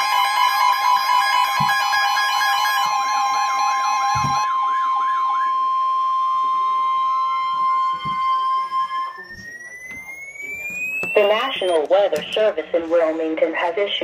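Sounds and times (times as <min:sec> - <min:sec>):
rising whistle-like tone: 0:00.0 - 0:11.9
high-pitched alert beep: 0:07.0 - 0:12.5.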